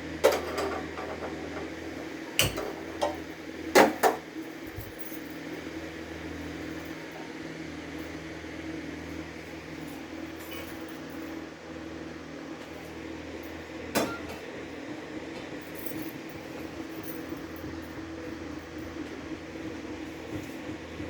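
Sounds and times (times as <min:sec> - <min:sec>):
steady mechanical hum: 0:00.0 - 0:21.0
utensils and dishes clinking: 0:00.2 - 0:01.7, 0:02.4 - 0:03.2, 0:14.0 - 0:14.4.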